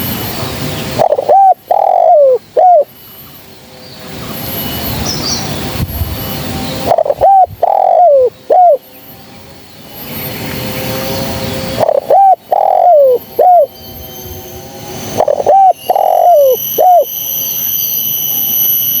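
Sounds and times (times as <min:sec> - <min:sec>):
dove cooing: 0:00.9 - 0:02.9, 0:06.8 - 0:08.8, 0:11.7 - 0:13.7, 0:15.2 - 0:17.1.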